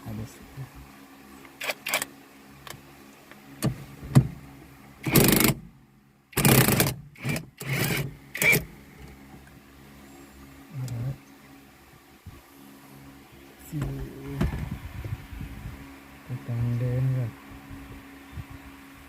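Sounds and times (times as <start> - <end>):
low steady hum: 0.0 - 19.0
sharp clicks: 1.4 - 2.8.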